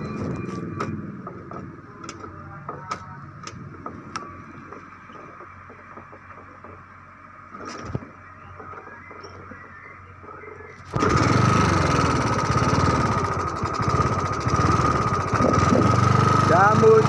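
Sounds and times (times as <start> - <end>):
small engine running roughly: 10.9 - 17.0.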